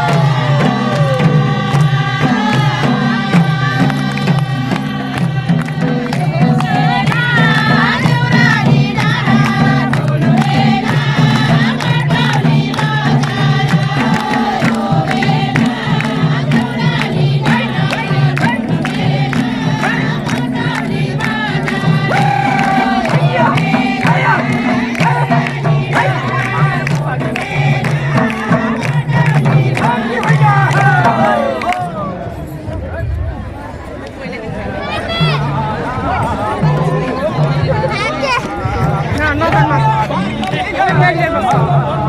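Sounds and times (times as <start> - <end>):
steady drum beat: 0.0 - 33.8, 34.5 - 42.0
person singing: 22.0 - 27.2.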